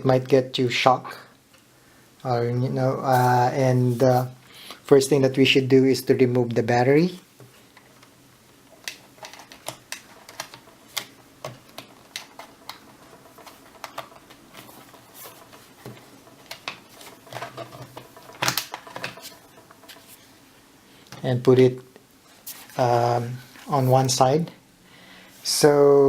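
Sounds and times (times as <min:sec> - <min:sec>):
laptop battery clatter: 0:08.7 - 0:20.3
plastic clicks and knocks: 0:08.8 - 0:20.1.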